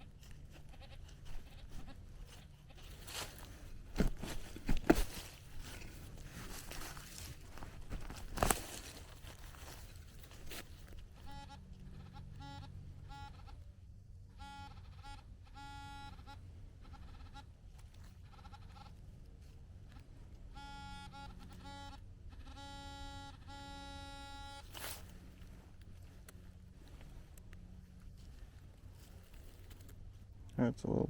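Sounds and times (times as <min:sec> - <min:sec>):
metal detector beeps: 0:11.2 - 0:11.6, 0:12.4 - 0:13.6, 0:14.4 - 0:16.4, 0:20.5 - 0:25.0.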